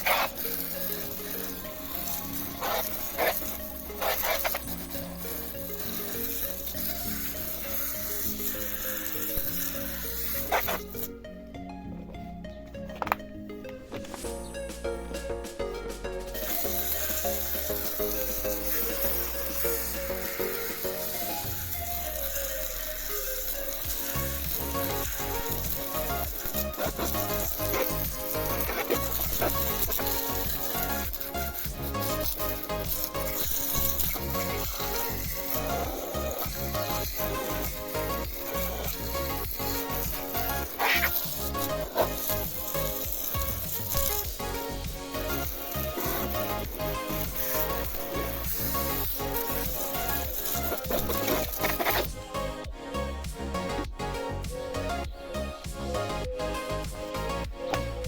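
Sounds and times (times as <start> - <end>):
hose water spraying on wheel: 0.0 - 11.1, 16.2 - 52.5
background music: 0.0 - 58.0
constant hiss: 14.1 - 55.0.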